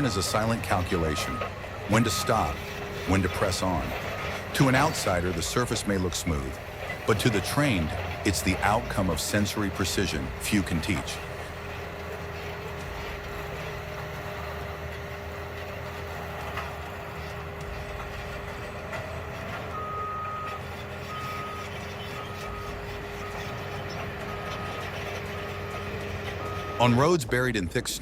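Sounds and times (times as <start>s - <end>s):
reversing alarm beeping: 0.0s - 11.3s, 17.2s - 27.2s
bulldozer engine running: 0.0s - 28.0s.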